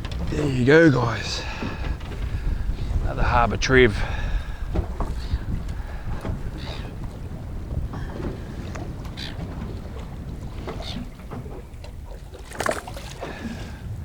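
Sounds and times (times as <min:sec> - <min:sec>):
water lapping around boat: 0:00.0 - 0:14.0
wind buffeting microphone: 0:00.0 - 0:14.0.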